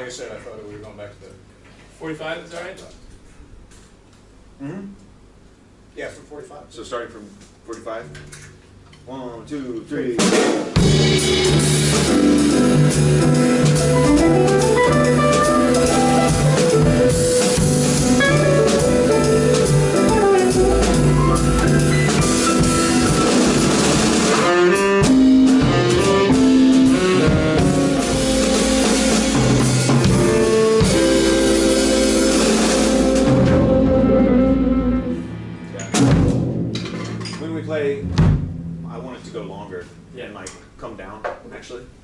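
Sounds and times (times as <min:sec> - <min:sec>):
drum kit: 0:09.8 - 0:41.5
low bass line: 0:10.9 - 0:40.2
guitar melody: 0:11.0 - 0:35.8.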